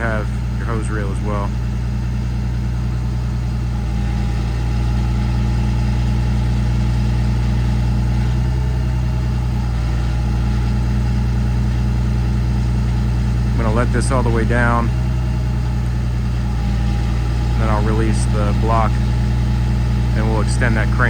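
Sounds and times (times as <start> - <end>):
diesel engine idling: 0.0 - 21.0.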